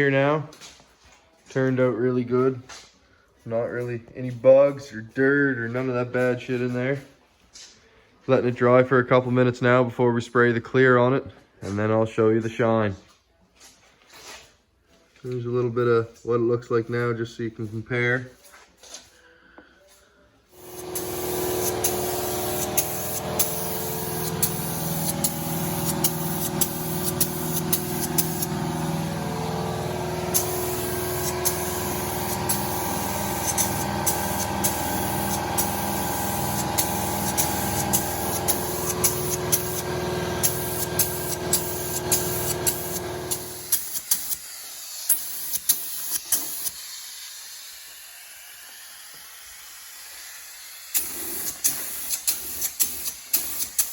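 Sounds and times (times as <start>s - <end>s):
air compressor hum: 20.4s - 49.5s, 50.9s - 53.9s
paint spray gun hissing: 20.5s - 53.9s.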